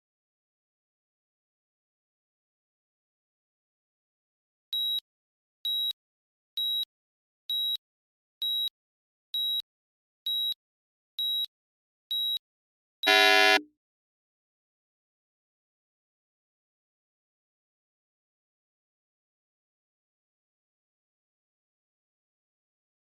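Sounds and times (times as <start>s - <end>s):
buzzer tone: 13.0s - 13.7s
short high timer beeps: 13.1s - 13.6s.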